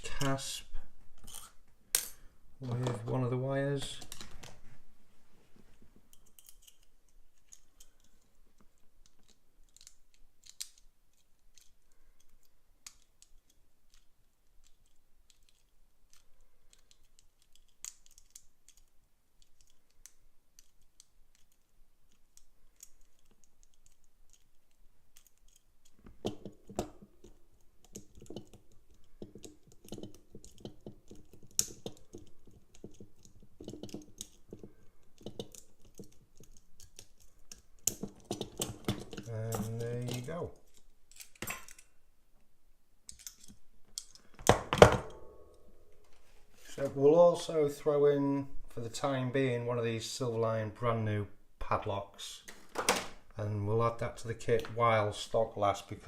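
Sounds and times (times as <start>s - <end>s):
lock pick clicks and scrapes: 1.2s - 2.2s, 6.1s - 8.2s, 9.0s - 41.9s, 43.1s - 44.4s.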